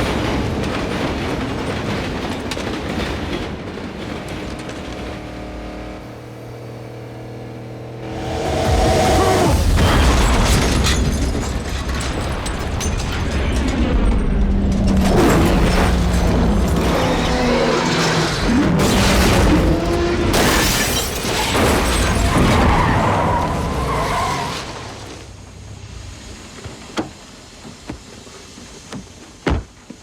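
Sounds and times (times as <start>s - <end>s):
tyres skidding: 0.0s - 30.0s
car engine: 4.0s - 27.8s
loud car crash: 8.0s - 27.2s
glass shattering: 9.3s - 23.0s.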